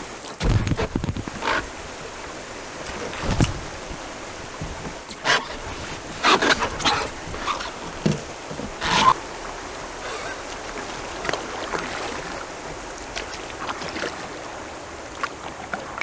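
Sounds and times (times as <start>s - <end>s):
water lapping: 0.0s - 16.0s
water splashes: 0.0s - 16.0s
wind: 0.0s - 16.0s
knocks on canoe: 0.3s - 9.3s.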